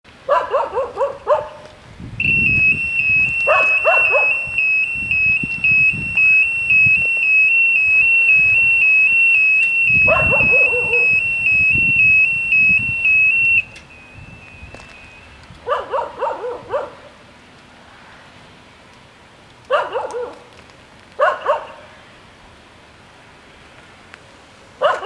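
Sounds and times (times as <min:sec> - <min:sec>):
dog barking: 0:00.3 - 0:01.7, 0:03.5 - 0:04.5, 0:10.1 - 0:11.1, 0:15.6 - 0:17.2, 0:19.7 - 0:20.5, 0:21.2 - 0:21.9, 0:24.8 - 0:25.0
level crossing warning bells: 0:02.2 - 0:16.0.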